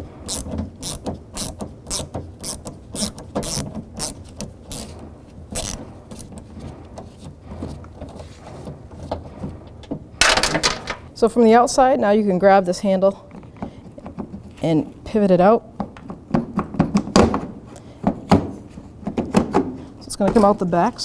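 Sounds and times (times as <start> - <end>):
ratchet clicking: 0.3 - 4.9, 5.6 - 6.3.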